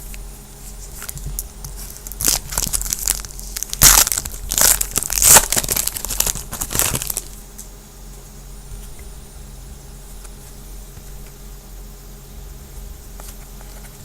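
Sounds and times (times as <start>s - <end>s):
plastic wrapper crinkling and tearing: 0.9s - 7.4s.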